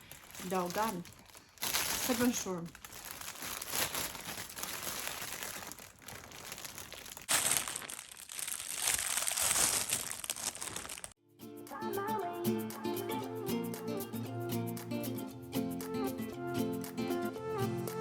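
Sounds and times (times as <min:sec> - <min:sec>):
crackly crinkling rustle: 0:00.0 - 0:11.2.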